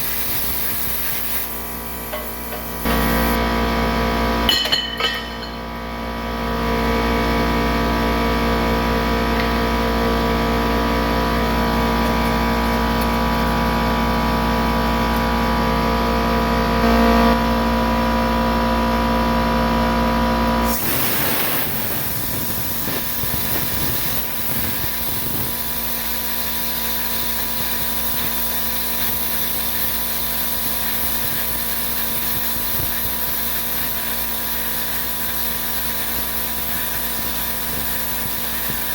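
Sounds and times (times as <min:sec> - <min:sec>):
plasma cutter hiss: 0:00.0 - 0:03.4, 0:20.6 - 0:38.9
shop machinery humming: 0:00.0 - 0:15.3, 0:20.6 - 0:38.9.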